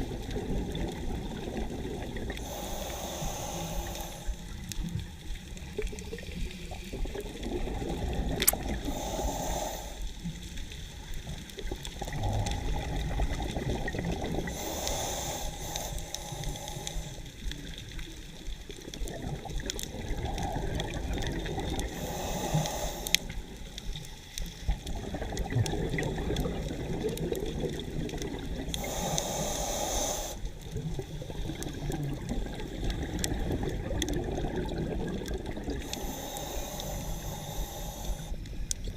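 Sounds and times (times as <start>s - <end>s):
exhaled bubbles bursting: 0.0s - 2.5s, 5.7s - 8.9s, 11.6s - 14.6s, 18.8s - 22.0s, 24.8s - 28.8s, 30.8s - 36.0s
diver breathing through regulator: 2.4s - 4.6s, 8.7s - 10.3s, 14.4s - 17.4s, 21.8s - 23.6s, 28.7s - 30.6s, 35.8s - 38.6s.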